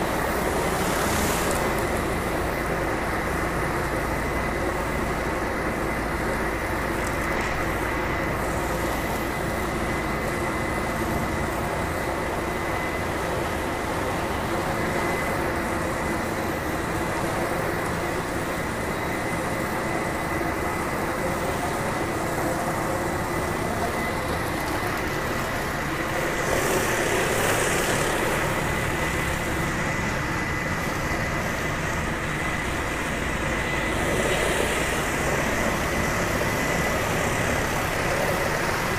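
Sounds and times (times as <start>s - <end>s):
pressure washer whining: 0.0s - 38.9s.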